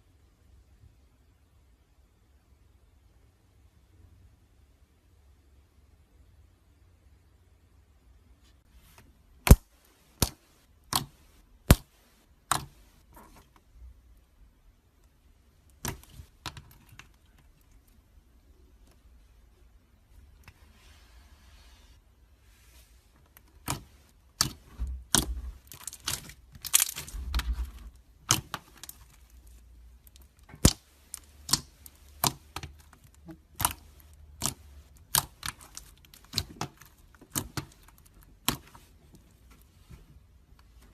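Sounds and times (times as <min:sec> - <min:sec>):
slime clicking and popping: 0:23.6 - 0:29.2, 0:30.0 - 0:38.8.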